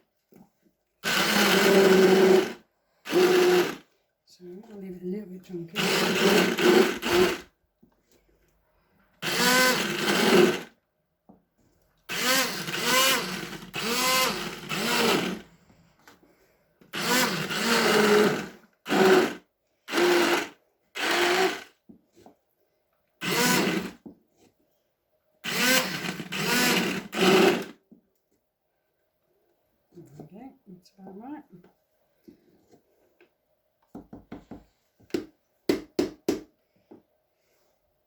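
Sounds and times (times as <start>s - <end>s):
electric blender pulsing: 1.0s - 3.8s, 5.8s - 7.5s, 9.2s - 10.7s, 12.1s - 15.5s, 16.9s - 21.7s, 23.2s - 24.0s, 25.4s - 27.7s.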